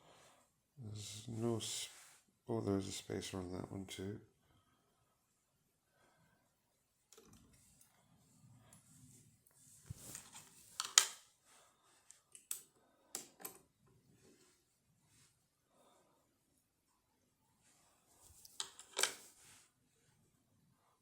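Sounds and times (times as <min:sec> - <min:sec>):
metal lock parts clicking and scraping: 0:10.7 - 0:11.2, 0:18.4 - 0:19.3.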